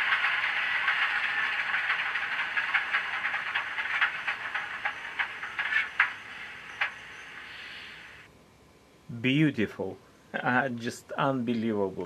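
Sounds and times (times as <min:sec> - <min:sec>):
wheels clicking over rail joints: 0:00.0 - 0:08.2
model train rolling hiss: 0:00.0 - 0:08.3.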